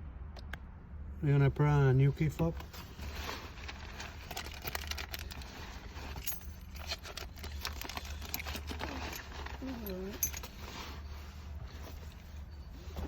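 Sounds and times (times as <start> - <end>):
keys jangling and clicking: 4.2 - 11.0.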